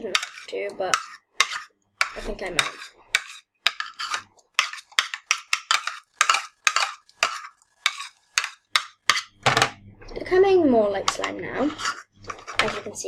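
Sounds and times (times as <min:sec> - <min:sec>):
spoon beating slime in container: 0:00.0 - 0:09.4.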